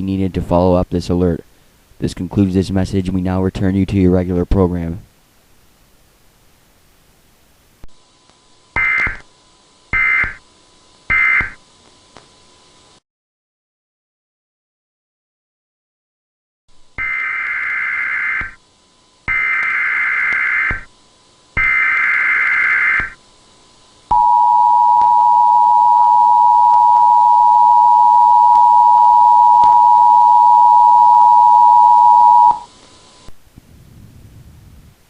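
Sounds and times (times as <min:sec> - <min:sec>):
digital header data bursts: 0:08.8 - 0:09.2, 0:10.0 - 0:10.4, 0:11.1 - 0:11.6, 0:21.6 - 0:23.2
two-tone attention signal: 0:24.1 - 0:32.7.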